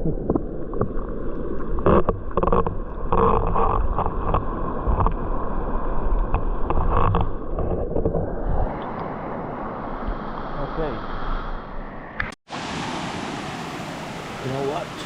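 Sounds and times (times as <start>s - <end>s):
waterfall rushing water: 12.5s - 15.0s.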